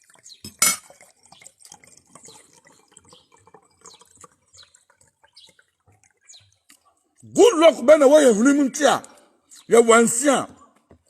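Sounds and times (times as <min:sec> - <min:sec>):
faint small clicks and ticks: 0:01.3 - 0:07.2.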